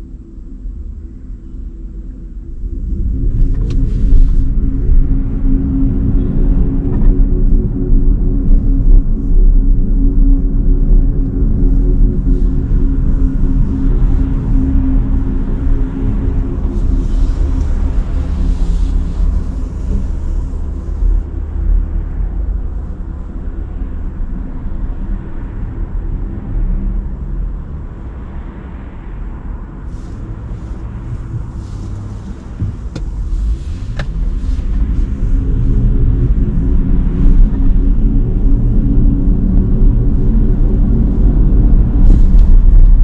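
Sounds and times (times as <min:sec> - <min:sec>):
road and tyre rumble: 0:00.0 - 0:43.0
tyre hiss on wet road: 0:29.9 - 0:35.4.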